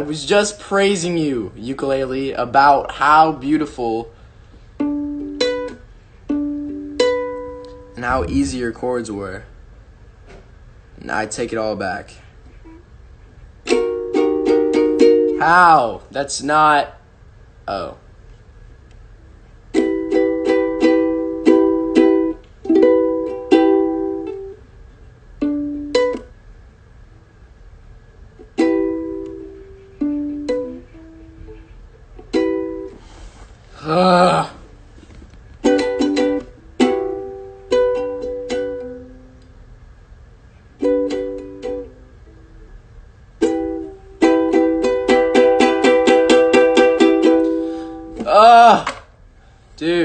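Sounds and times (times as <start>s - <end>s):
ukulele strumming: 4.8s - 8.9s, 13.7s - 15.4s, 19.7s - 24.6s, 25.4s - 26.3s, 28.6s - 31.6s, 32.2s - 33.0s, 35.6s - 39.4s, 40.8s - 42.4s, 43.4s - 48.3s.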